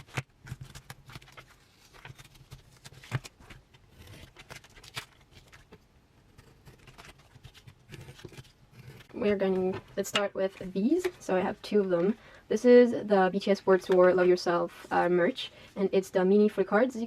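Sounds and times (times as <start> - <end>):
packaging rustling: 0.0 - 9.2.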